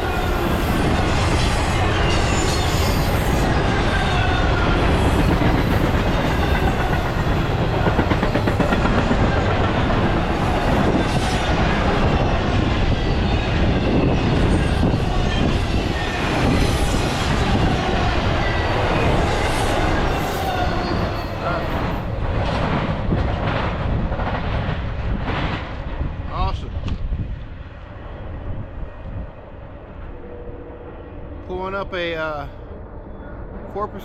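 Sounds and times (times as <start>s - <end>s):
freight train wheels clacking: 0.0s - 25.9s.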